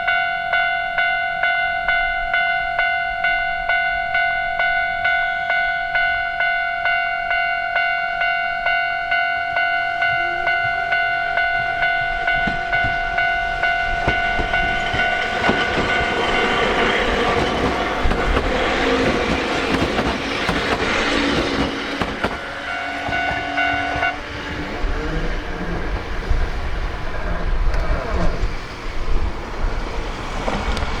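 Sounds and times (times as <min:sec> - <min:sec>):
level-crossing alarm bell: 0:00.0 - 0:24.8
train passing with rail noise: 0:00.0 - 0:31.0.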